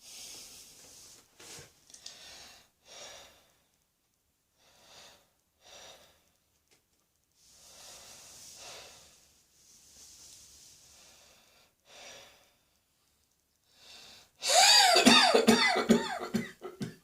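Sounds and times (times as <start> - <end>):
person breathing: 0.0 - 3.7, 4.6 - 6.4, 7.4 - 12.8, 13.7 - 14.9.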